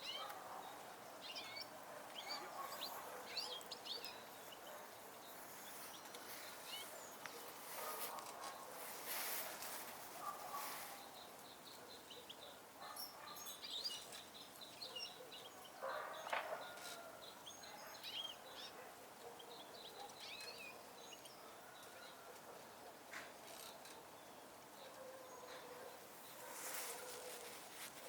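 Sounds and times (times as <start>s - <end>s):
songbirds chirping and twittering: 0.0s - 28.0s
rustle: 2.2s - 12.2s, 20.0s - 28.0s.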